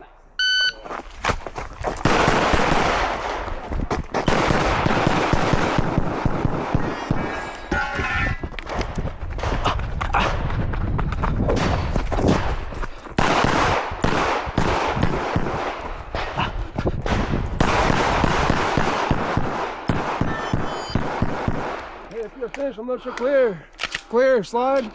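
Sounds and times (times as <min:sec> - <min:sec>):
rapid pistol shots: 0:02.0 - 0:07.4, 0:13.2 - 0:16.0, 0:17.1 - 0:22.1.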